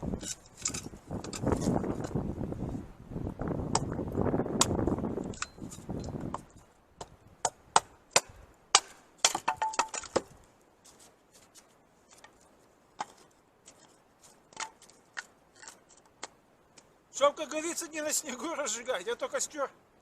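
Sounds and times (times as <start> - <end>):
firewood knocking together: 4.6 - 10.4.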